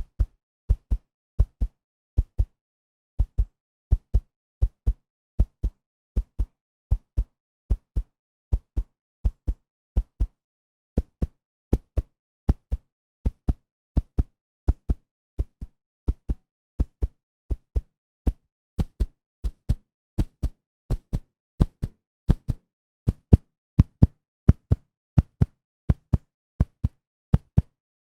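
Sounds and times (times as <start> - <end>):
heartbeat thumps: 23.1 - 27.6.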